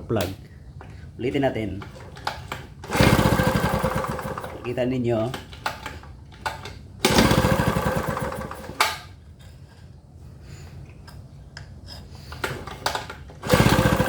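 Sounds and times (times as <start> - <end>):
generator engine cranking: 1.8 - 9.1, 12.4 - 14.0.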